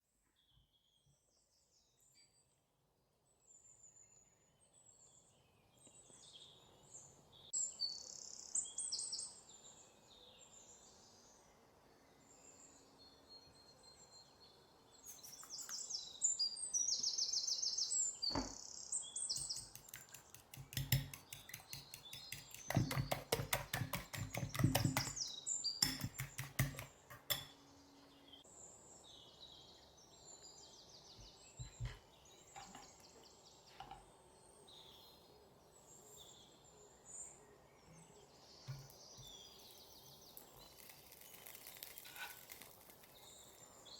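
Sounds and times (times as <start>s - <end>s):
small birds chirping: 3.5s - 43.9s
rapid clicking strokes: 19.4s - 25.2s.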